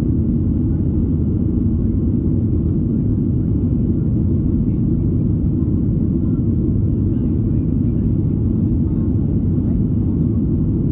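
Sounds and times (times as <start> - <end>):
jet engine rumble in cabin: 0.0 - 10.9.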